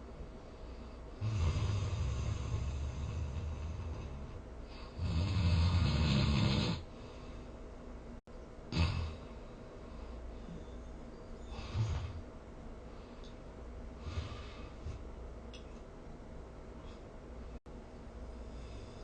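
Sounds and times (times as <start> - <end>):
person snoring: 1.2 - 7.0, 8.7 - 9.4, 11.4 - 12.2, 14.0 - 15.0.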